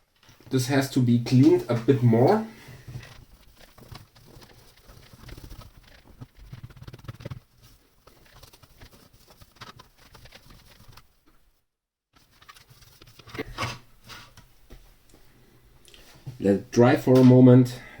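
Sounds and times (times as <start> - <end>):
scrubbing plastic parts: 0.0 - 11.4, 12.2 - 14.5.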